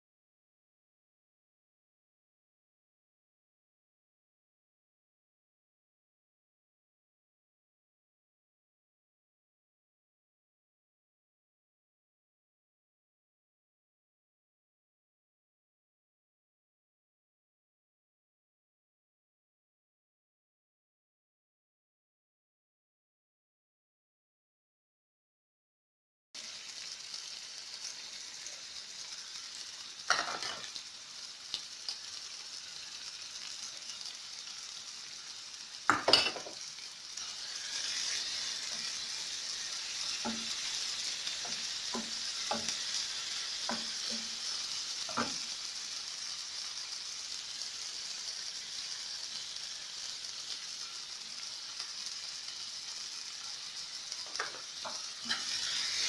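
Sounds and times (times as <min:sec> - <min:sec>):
food sizzling in a pan: 0:26.4 - 0:56.0.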